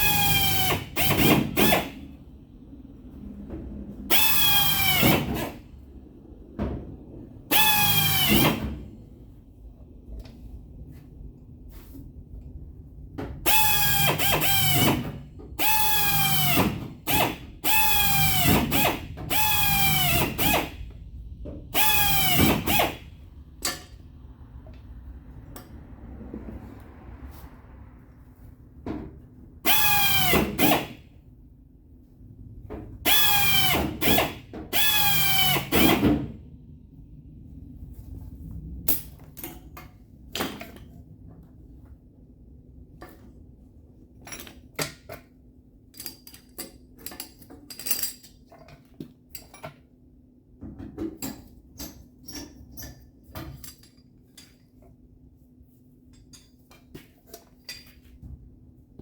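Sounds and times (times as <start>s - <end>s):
power drill drilling sheet metal: 15.6s - 20.7s, 33.1s - 35.9s
tools clicking and knocking: 44.2s - 49.9s, 50.6s - 54.9s, 56.1s - 58.3s.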